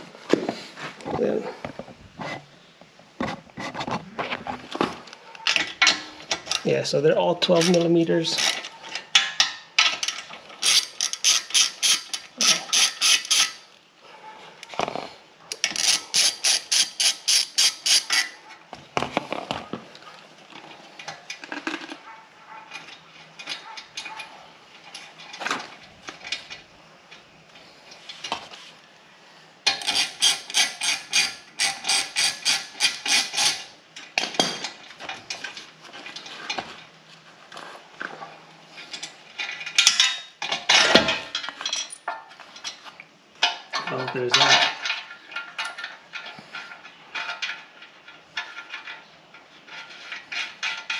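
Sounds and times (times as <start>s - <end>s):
ratchet wrench clicking: 10.6s - 13.6s, 15.8s - 18.4s, 29.7s - 33.7s.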